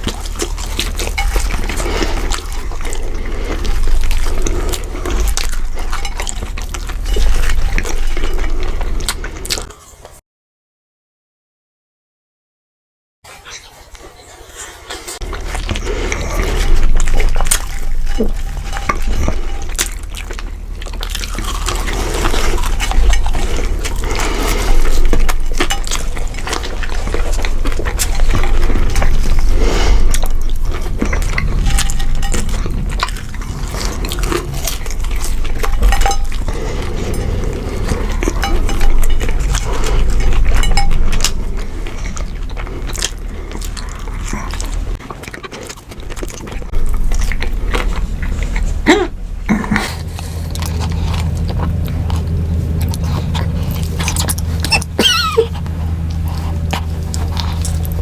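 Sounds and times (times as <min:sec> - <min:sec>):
steady low rumble: 0:00.0 - 0:09.7, 0:15.2 - 0:45.1, 0:45.9 - 0:58.0
hands rustling food containers: 0:49.8 - 0:58.0.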